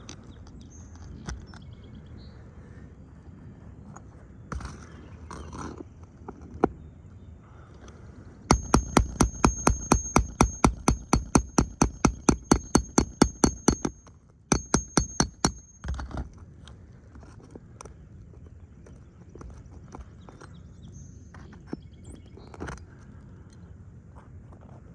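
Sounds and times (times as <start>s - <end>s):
hammer striking rapidly: 8.5s - 16.0s.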